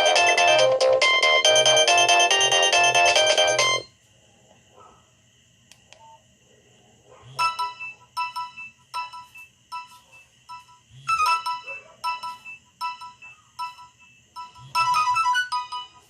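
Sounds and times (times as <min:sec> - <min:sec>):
mobile phone ringtone melody: 0:00.0 - 0:03.9, 0:07.4 - 0:16.0.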